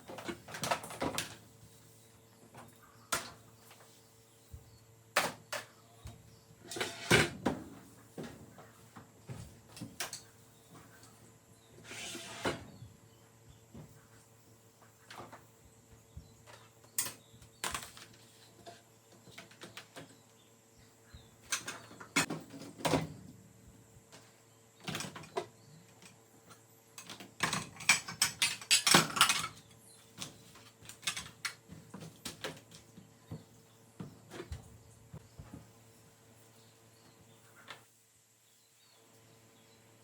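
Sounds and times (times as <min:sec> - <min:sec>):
kitchen objects clattering: 0:27.4 - 0:29.6.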